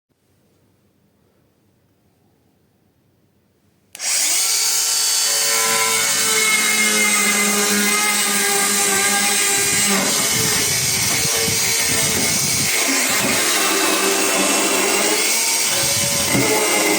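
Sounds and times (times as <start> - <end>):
saw cutting chipboard: 4.0 - 16.9
saw motor whine: 4.0 - 16.9.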